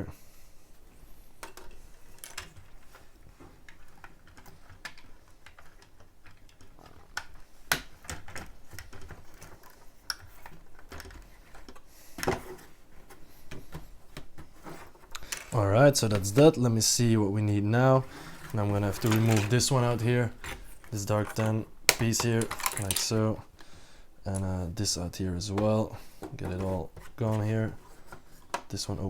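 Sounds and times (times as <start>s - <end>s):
plastic bricks clicking together: 15.1s - 15.6s, 21.2s - 23.2s.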